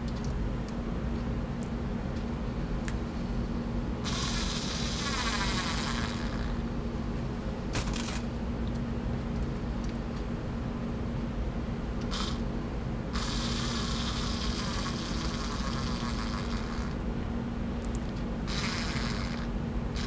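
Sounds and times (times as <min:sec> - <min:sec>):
cordless screwdriver motor buzzing: 0:18.5 - 0:19.5.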